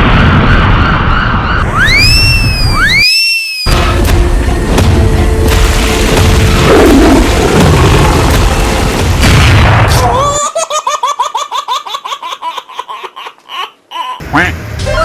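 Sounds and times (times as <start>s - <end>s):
loud bass-heavy crash: 3.7s - 10.2s
high-pitched giggling laugh: 10.2s - 14.2s.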